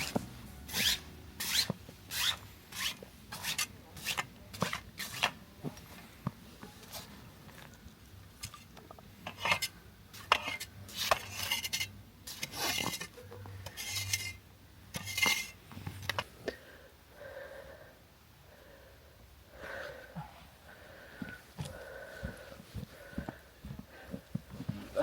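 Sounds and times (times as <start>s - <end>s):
utensils scraping: 0.0s - 5.3s, 9.3s - 15.6s.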